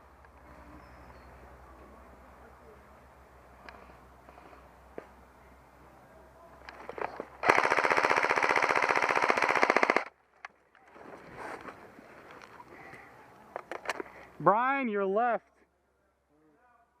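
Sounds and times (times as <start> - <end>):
airsoft gun full-auto burst: 7.4 - 10.1.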